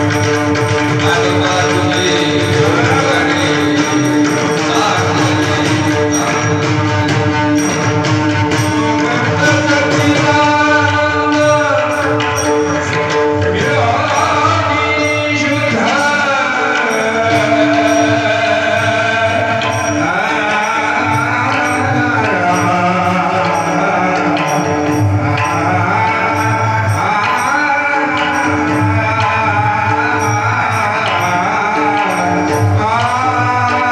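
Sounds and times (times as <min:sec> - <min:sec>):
devotional singing: 0:00.0 - 0:33.9
hand cymbals striking: 0:00.0 - 0:33.9.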